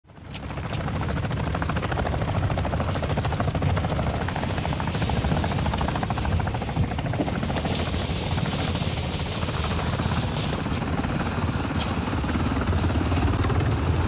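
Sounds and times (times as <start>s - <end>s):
mechanical drone with fluttering pulse: 0.1s - 14.0s.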